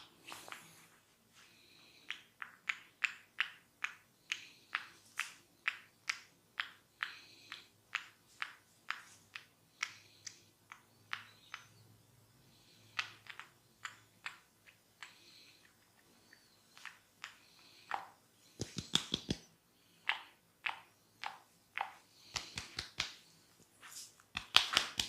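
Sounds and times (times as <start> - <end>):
fingers snapping hair cracks: 18.6 - 19.5, 20.1 - 23.2, 24.3 - 25.0.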